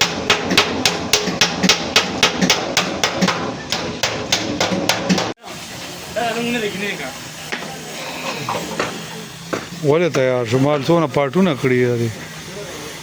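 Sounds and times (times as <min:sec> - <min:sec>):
hammer beating sheet metal: 0:00.0 - 0:05.4.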